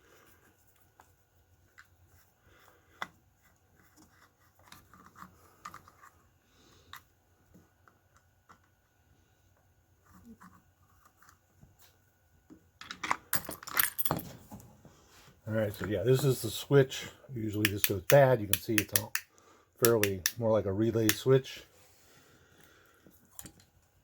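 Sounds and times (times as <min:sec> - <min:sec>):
small parts clicking and scraping: 0:03.8 - 0:06.2.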